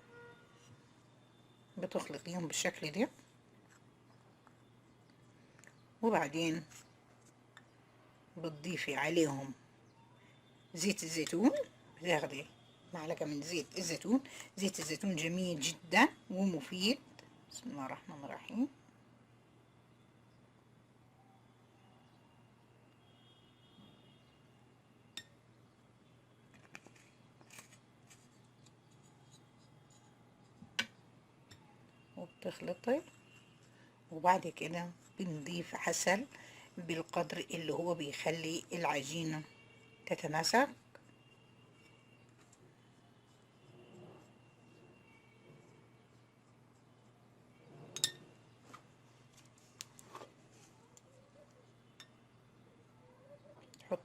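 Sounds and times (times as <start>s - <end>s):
spoon scraping bowl: 47.6s - 48.5s
spoon clicking on bowl: 48.0s - 48.2s.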